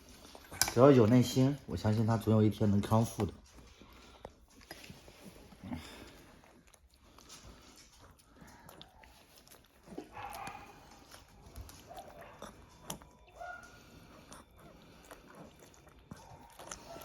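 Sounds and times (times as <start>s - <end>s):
dog licking and chewing: 0.0s - 17.0s.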